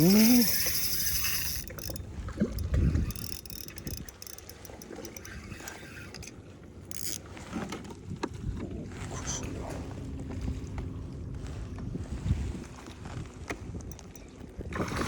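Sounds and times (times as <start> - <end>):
gear clicks: 0.0 - 7.3
water sloshing around kayak: 0.0 - 15.0.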